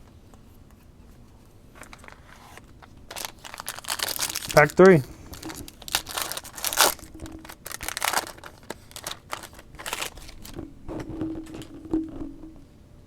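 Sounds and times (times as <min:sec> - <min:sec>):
cards being pulled out: 0:01.8 - 0:10.6
foil wrapper crinkling: 0:01.8 - 0:10.7.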